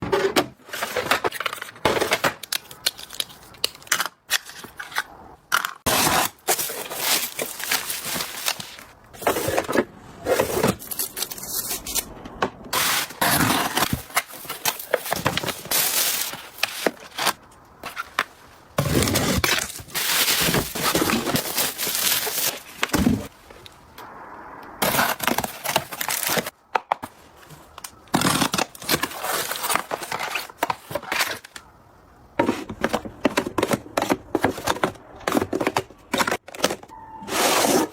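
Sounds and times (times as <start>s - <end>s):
packaging being handled: 5.9s - 9.7s, 12.8s - 23.3s.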